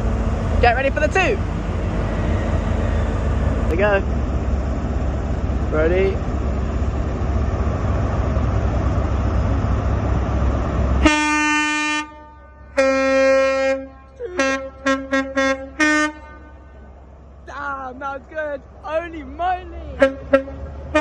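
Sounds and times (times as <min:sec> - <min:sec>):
rushing rumble: 0:00.0 - 0:21.0
two-tone train horn: 0:11.0 - 0:16.8, 0:20.0 - 0:21.0.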